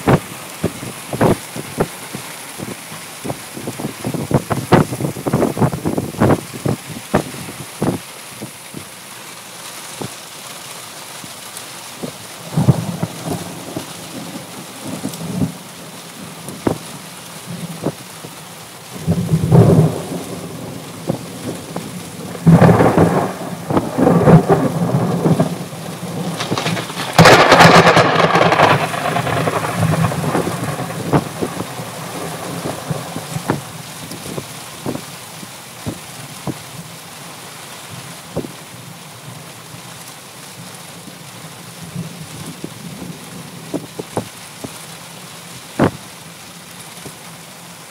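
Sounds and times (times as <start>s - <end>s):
raindrops striking: 0.0s - 37.0s, 41.8s - 47.9s
heavy rain hissing: 0.0s - 47.9s
thunder: 19.1s - 21.6s, 22.3s - 33.6s.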